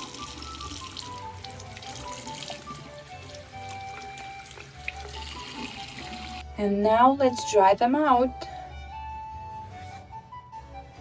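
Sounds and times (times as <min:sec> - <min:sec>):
tap water running into sink: 0:00.0 - 0:06.4
background music: 0:00.0 - 0:11.0.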